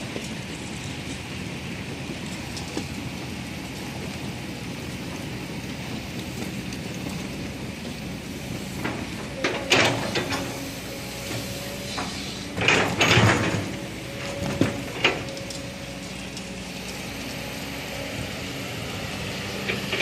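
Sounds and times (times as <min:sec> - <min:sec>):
construction background noise: 0:00.0 - 0:20.0
sharp knocks and clanks: 0:12.0 - 0:13.8.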